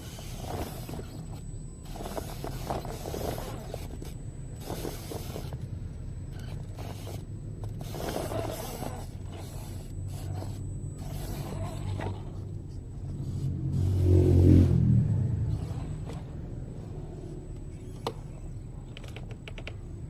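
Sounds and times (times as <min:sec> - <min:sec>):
toy crawler drivetrain whirring: 0:00.0 - 0:05.7, 0:06.3 - 0:14.6
steady low hum: 0:00.0 - 0:20.0.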